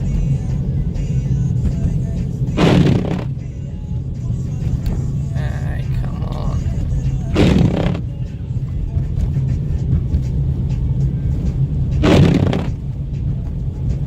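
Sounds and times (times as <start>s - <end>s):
car road rumble: 0.0s - 14.0s
loud whooshes: 2.6s - 3.4s, 5.3s - 8.1s, 11.9s - 12.8s.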